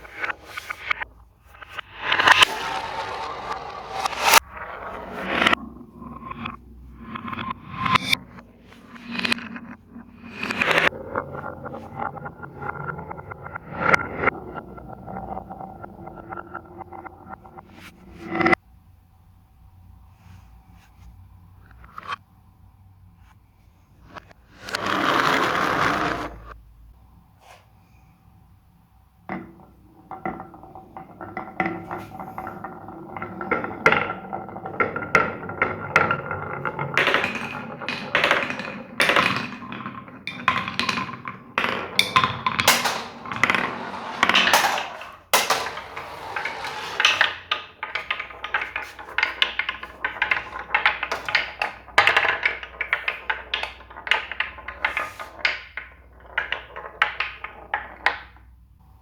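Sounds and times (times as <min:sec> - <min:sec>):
marbles rolling down plastic tracks: 0:01.8 - 0:05.6, 0:24.1 - 0:26.6, 0:29.3 - 0:58.6.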